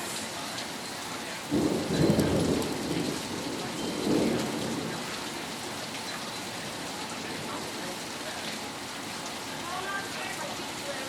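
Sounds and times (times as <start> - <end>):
heavy rain falling: 0.0 - 11.0
low rumble of thunder: 1.4 - 8.0.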